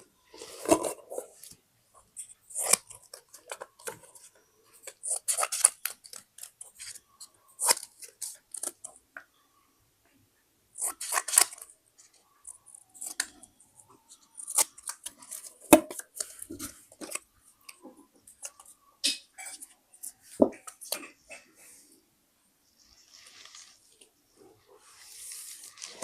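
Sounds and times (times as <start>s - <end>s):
scissors cutting paper: 2.5s - 3.7s, 4.8s - 7.0s, 10.8s - 11.6s.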